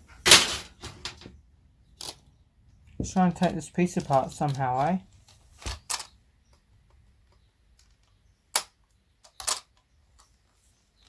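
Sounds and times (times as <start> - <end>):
clicks of parts being handled: 3.4 - 6.2, 7.3 - 10.3.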